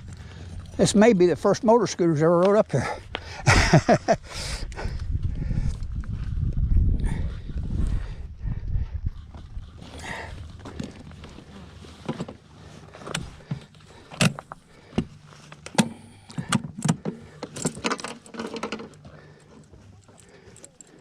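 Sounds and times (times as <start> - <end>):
scooter engine running: 8.8 - 21.0.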